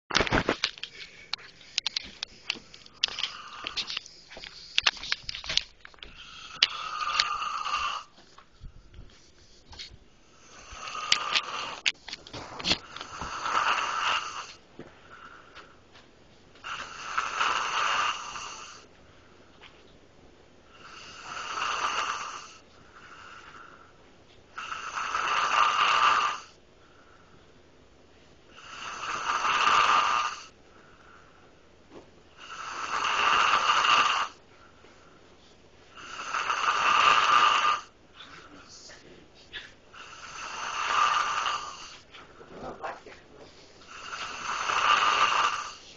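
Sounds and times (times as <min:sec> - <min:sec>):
faint breaths: 0:00.6 - 0:20.0, 0:20.6 - 0:45.9
person snoring loudly: 0:06.2 - 0:08.1, 0:10.2 - 0:14.6, 0:16.6 - 0:18.9, 0:20.7 - 0:23.4, 0:24.6 - 0:26.6, 0:28.5 - 0:30.6, 0:32.3 - 0:34.4, 0:35.9 - 0:38.0, 0:40.0 - 0:42.0, 0:43.9 - 0:45.9.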